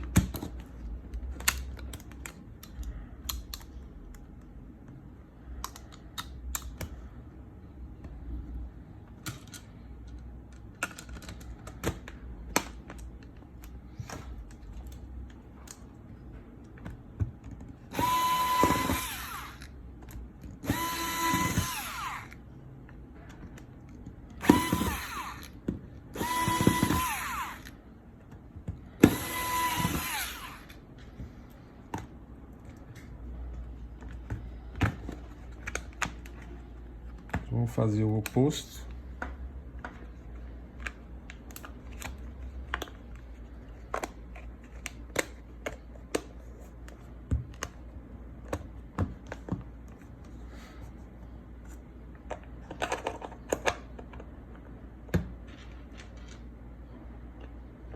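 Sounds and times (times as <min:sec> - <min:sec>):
electric screwdriver driving screws: 0:17.9 - 0:19.7, 0:20.6 - 0:22.4, 0:24.4 - 0:25.6, 0:26.2 - 0:27.8, 0:29.0 - 0:30.8.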